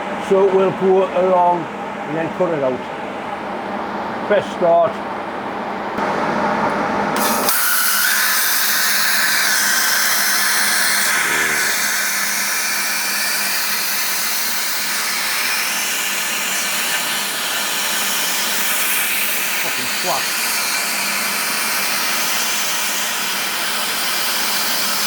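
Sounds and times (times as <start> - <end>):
plasma cutter hissing: 7.2 - 25.0.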